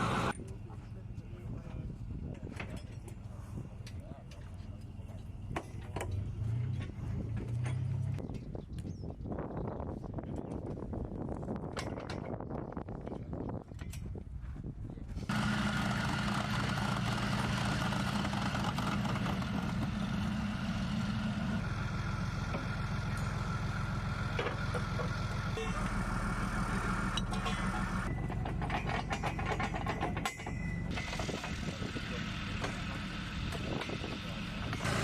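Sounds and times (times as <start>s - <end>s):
heavy diesel engine running: 0.0s - 1.7s, 15.3s - 35.0s.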